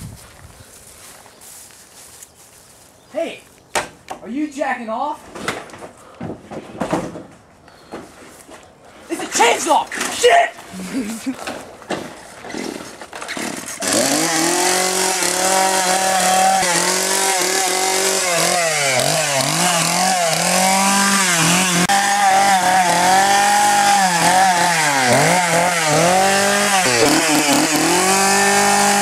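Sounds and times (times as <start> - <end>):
chainsaw engine revving: 12.4 - 29.0.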